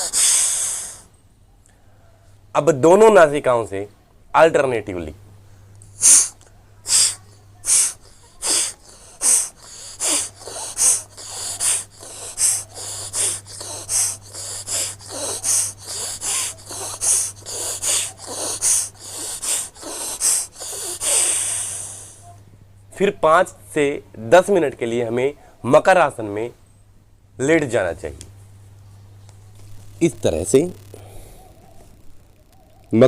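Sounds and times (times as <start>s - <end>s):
forceful exhalations through nose: 0.0s - 1.1s, 5.5s - 22.2s.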